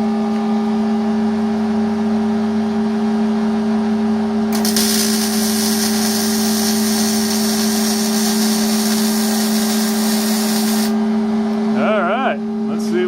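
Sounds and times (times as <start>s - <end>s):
machine hum: 4.5s - 11.8s
welding arc hissing and crackling: 4.6s - 11.0s.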